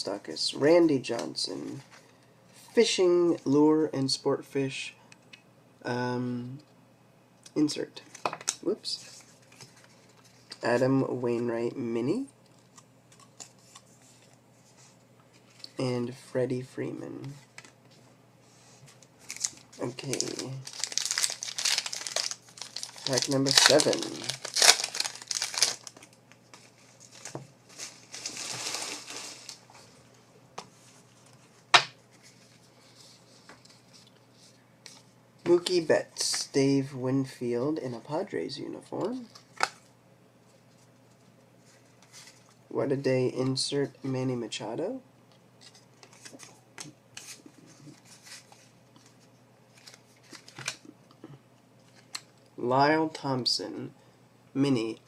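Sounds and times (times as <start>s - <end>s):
wrapper crinkling: 19.2s - 29.7s
wrapper rustle: 19.2s - 29.9s, 47.2s - 50.9s.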